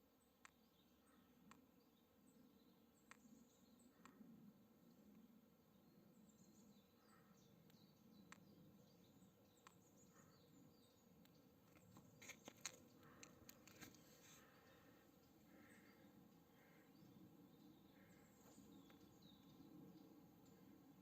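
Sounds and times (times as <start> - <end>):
soft clicks: 7.6 - 8.6.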